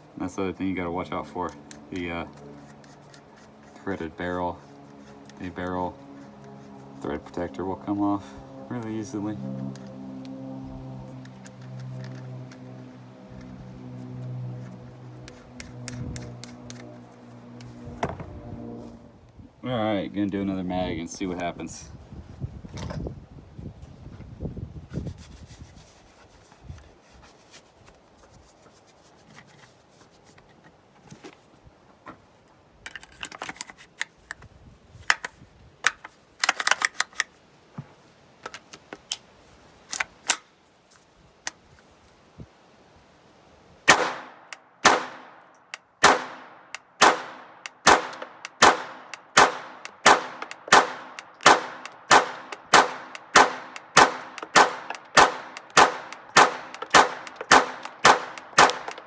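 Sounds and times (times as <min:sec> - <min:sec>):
pistol shots: 0:43.9 - 0:45.4, 0:46.0 - 0:59.0.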